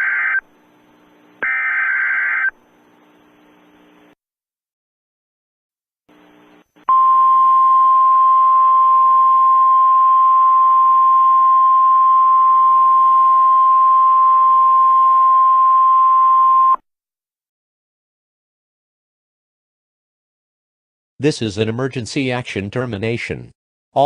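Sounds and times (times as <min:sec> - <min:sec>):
faint hum: 0:00.0 - 0:04.2, 0:06.1 - 0:16.8
steady electronic broadcast tone: 0:00.0 - 0:04.2, 0:06.1 - 0:16.8.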